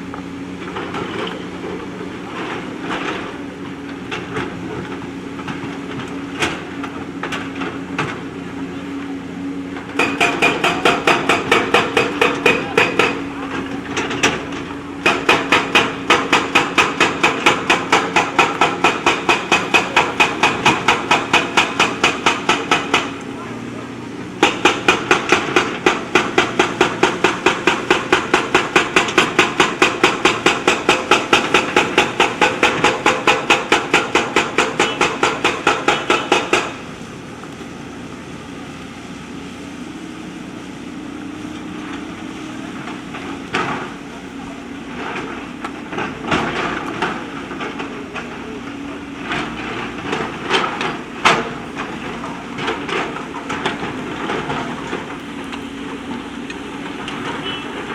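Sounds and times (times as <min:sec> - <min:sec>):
backhoe engine running: 0:00.0 - 0:57.9
backhoe rapid hammering: 0:00.6 - 0:08.4, 0:09.7 - 0:37.6, 0:41.2 - 0:57.9
clanks of stone and steel: 0:09.8 - 0:23.3, 0:24.4 - 0:36.9.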